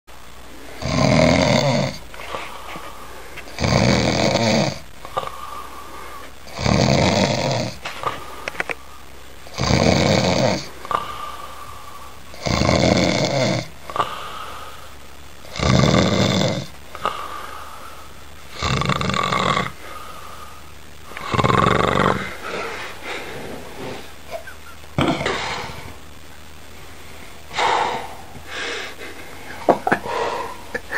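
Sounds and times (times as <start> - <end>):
man snoring: 0.7 - 2.1, 3.5 - 8.3, 9.4 - 17.6, 18.5 - 20.3, 21.1 - 24.0, 27.5 - 30.9
quiet breathing: 2.0 - 3.6, 4.9 - 6.5, 7.8 - 9.4, 10.6 - 12.4, 13.8 - 15.4, 16.8 - 18.6, 19.7 - 24.2, 25.2 - 30.9.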